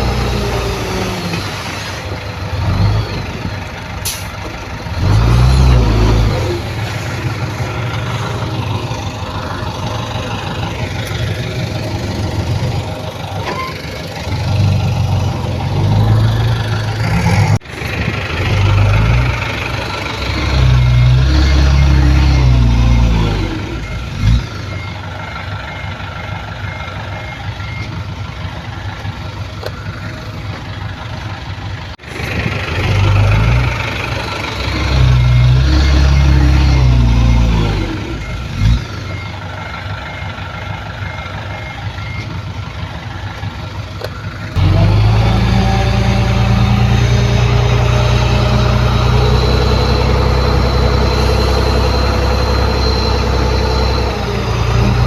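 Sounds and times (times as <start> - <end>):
diesel engines revving: 0.0 - 55.0
reversing alarm beeping: 20.1 - 28.2, 34.2 - 43.4, 44.1 - 55.0.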